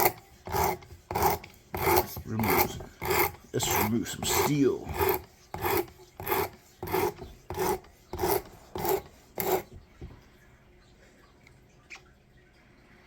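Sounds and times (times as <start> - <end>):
knife blade scraping on sandpaper: 0.0 - 9.8.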